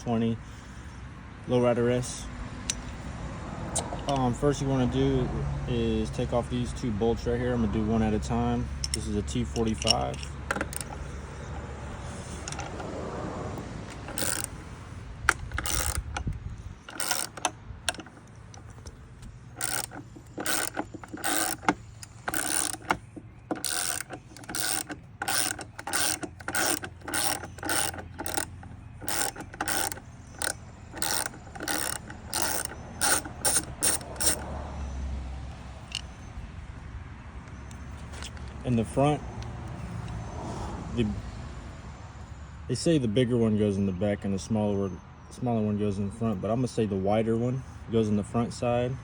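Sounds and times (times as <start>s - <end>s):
hand ratchet clicking: 8.8s - 11.0s, 12.4s - 12.9s, 13.9s - 14.7s, 15.3s - 34.5s.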